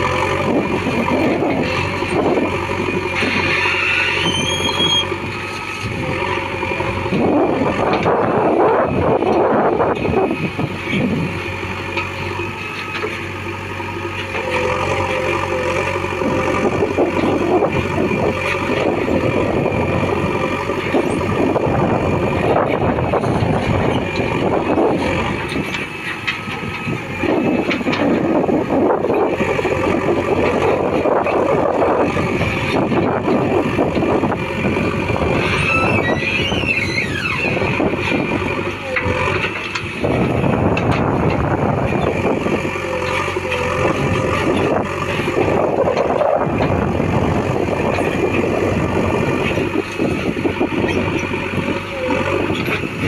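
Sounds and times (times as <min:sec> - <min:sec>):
diesel engine humming: 0:00.0 - 0:53.0
machinery squeal: 0:00.8 - 0:11.2, 0:12.2 - 0:29.3, 0:34.8 - 0:40.5.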